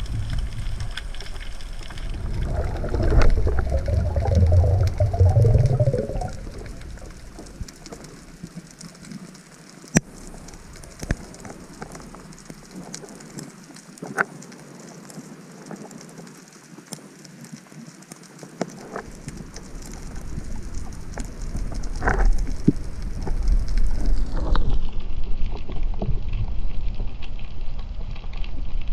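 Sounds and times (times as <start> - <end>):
water rushing past microphone: 0.0 - 8.8
underwater crackles and clicks: 0.0 - 28.9.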